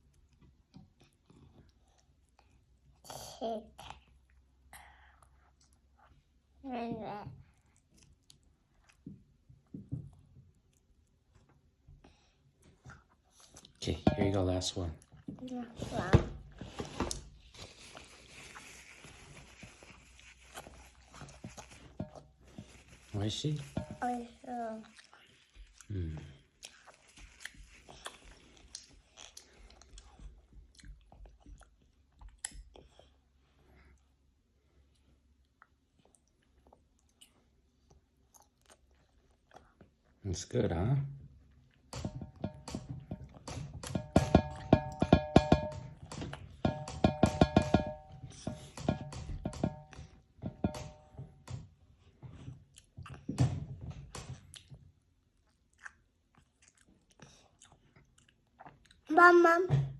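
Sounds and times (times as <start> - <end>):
wet chewing of fruit: 24.7 - 33.4, 34.9 - 40.2, 52.5 - 53.4, 54.3 - 59.1.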